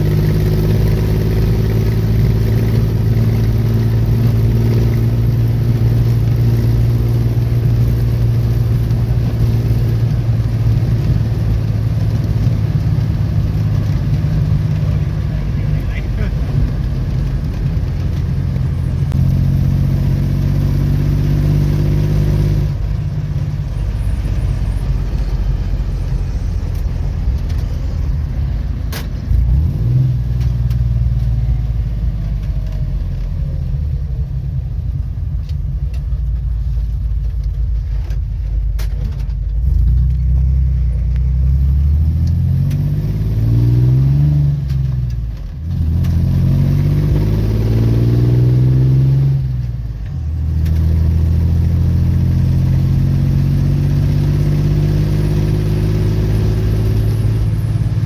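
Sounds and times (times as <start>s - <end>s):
car engine revving while driving: 0.0s - 58.0s.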